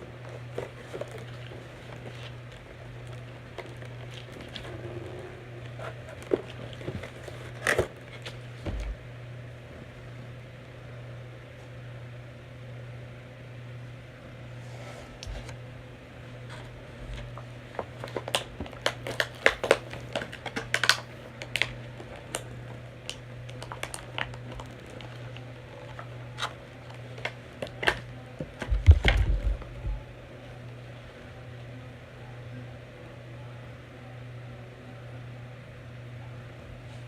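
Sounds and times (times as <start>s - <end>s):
steady low hum: 0.0s - 37.0s
hands handling plastic packaging: 0.2s - 4.7s, 17.2s - 29.3s.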